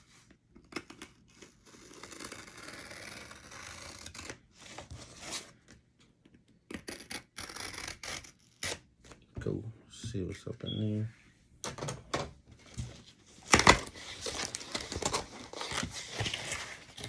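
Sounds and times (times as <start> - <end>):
packing paper tearing and rustling: 12.6 - 17.0.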